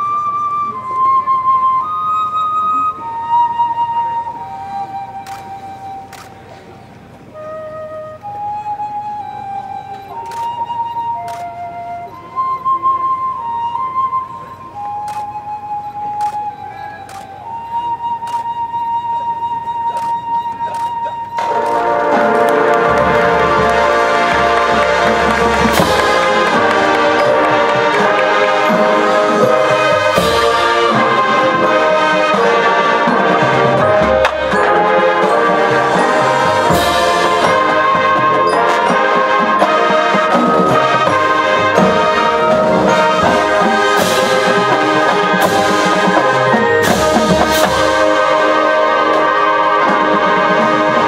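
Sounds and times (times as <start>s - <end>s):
marching band brass and percussion: 19.8s - 51.0s
sharp percussion hits: 21.4s - 51.0s.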